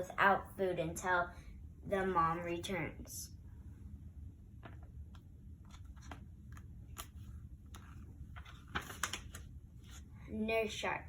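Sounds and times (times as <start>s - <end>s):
paper page rustling: 5.6s - 10.1s.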